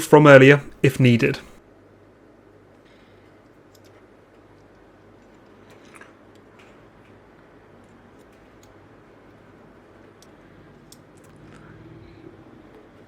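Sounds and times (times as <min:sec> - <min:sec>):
small clicks of wire connectors: 0:03.5 - 0:04.0.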